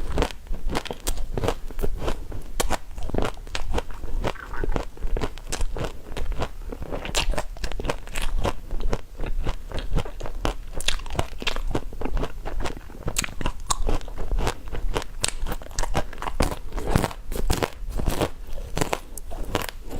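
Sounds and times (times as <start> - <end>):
person chewing crunchy food: 0.0 - 19.9.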